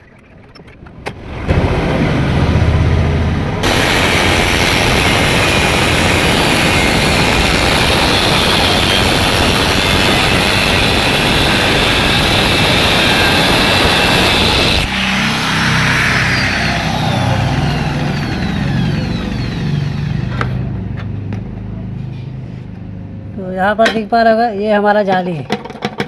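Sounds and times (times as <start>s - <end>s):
angle grinder cutting metal: 3.6s - 20.7s.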